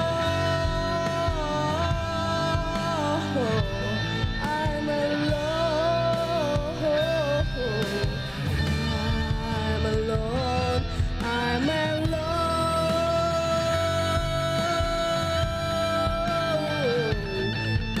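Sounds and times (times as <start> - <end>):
guitar and bass backing: 0.0 - 18.0
sliding lead guitar melody: 0.0 - 18.0.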